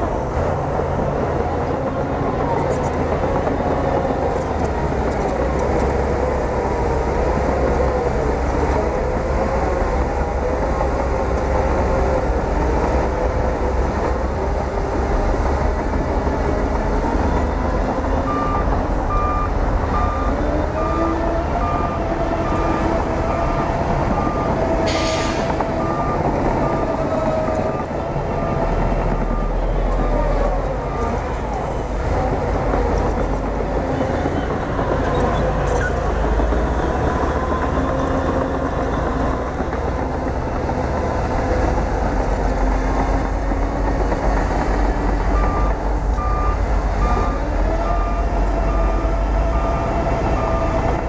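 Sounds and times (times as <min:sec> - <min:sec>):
bulldozer diesel engine running: 0:00.0 - 0:51.0
reversing alarm beeping: 0:17.2 - 0:31.3, 0:45.3 - 0:51.0.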